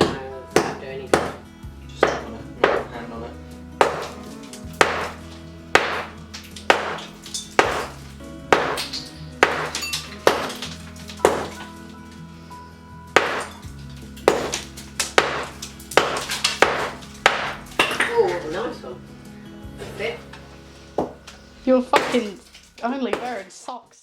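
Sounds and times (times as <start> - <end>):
hammer striking concrete: 0.0 - 3.1, 3.8 - 11.8, 13.1 - 18.6, 21.0 - 21.2, 21.9 - 23.5.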